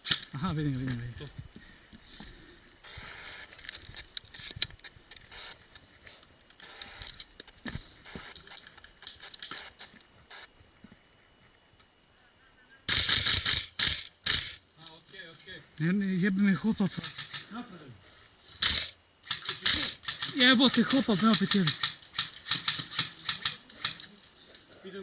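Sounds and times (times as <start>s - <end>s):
clicks and rustles of gear: 3.5s - 10.2s, 18.5s - 24.9s
airsoft gun firing: 12.9s - 14.6s, 18.6s - 24.0s.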